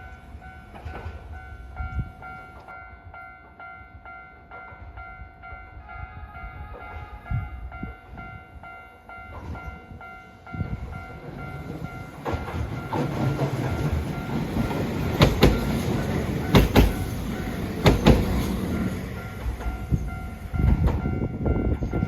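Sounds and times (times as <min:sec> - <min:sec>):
train rumbling past: 0:00.0 - 0:22.0
wheels clacking over rail joints: 0:10.9 - 0:22.0.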